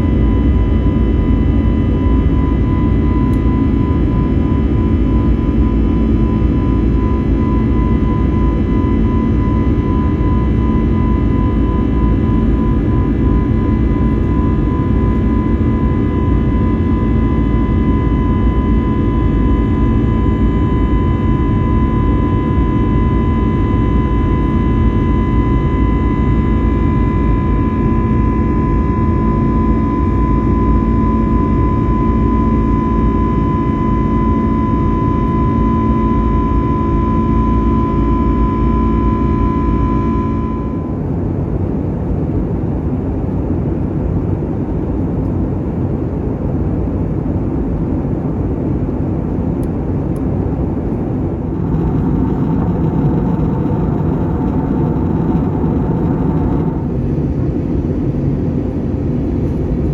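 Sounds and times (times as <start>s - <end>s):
jet engine drone in cabin: 0.0s - 59.9s
thin whining tones: 6.4s - 41.0s, 51.2s - 57.9s
cabin air: 31.9s - 41.2s, 49.6s - 59.9s.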